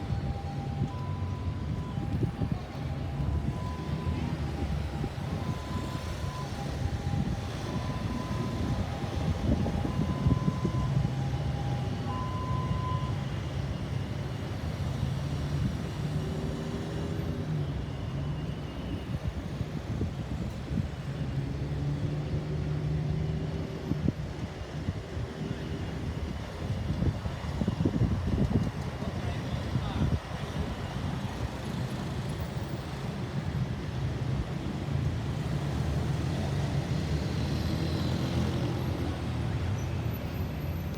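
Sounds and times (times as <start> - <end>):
two-tone hi-lo siren: 0.0 - 14.1
road traffic rumble: 0.0 - 40.9.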